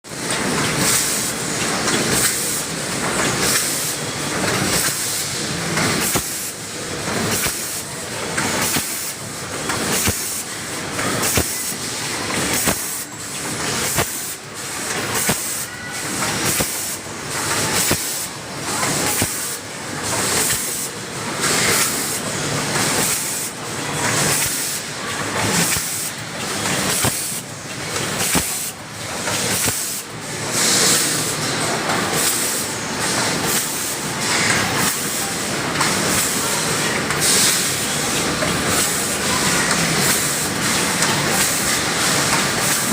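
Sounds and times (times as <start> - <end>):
machine clicks and clatter: 0.1 - 42.9
air hissing in bursts: 9.9 - 10.5.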